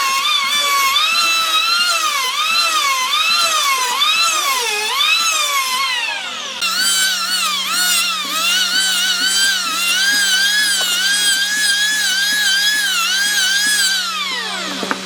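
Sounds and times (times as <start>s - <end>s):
electric power tool whining: 0.0s - 15.0s.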